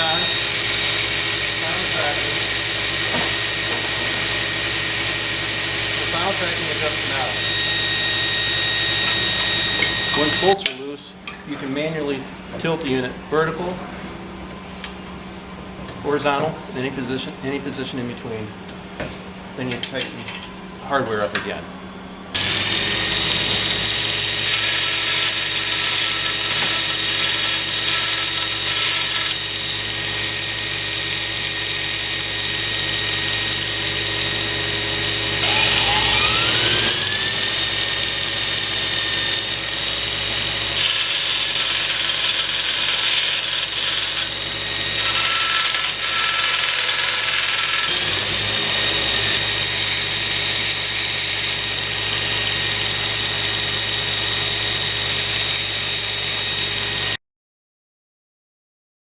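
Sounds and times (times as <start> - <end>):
belt grinder whining: 0.0 - 10.7, 22.3 - 57.2.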